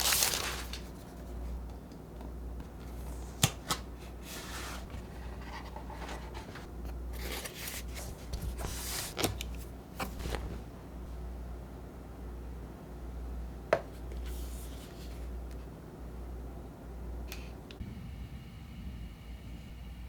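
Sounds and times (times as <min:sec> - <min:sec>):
cardboard and wrapping rustling: 0:00.0 - 0:01.1, 0:04.1 - 0:10.7
low steady hum: 0:00.0 - 0:20.0.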